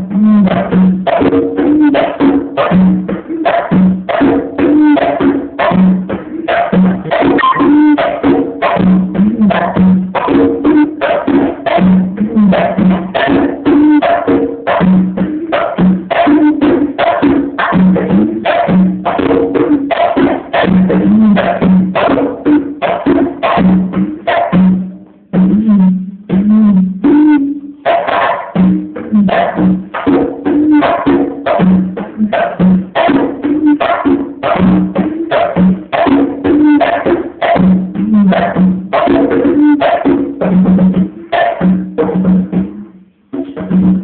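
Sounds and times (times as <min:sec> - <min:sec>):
conga drums: 0:00.0 - 0:44.0
other percussion: 0:00.0 - 0:44.0.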